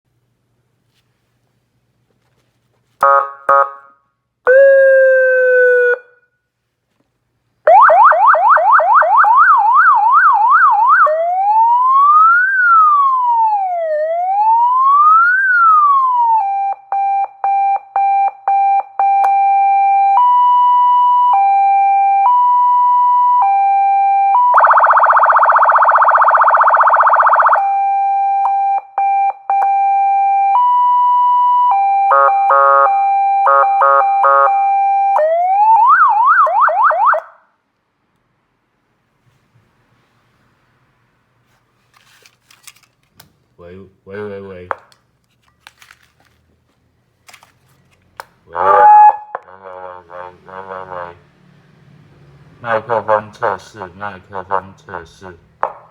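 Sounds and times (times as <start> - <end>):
electronic siren wailing and yelping: 4.5 - 6.2, 7.7 - 37.4, 48.5 - 51.2.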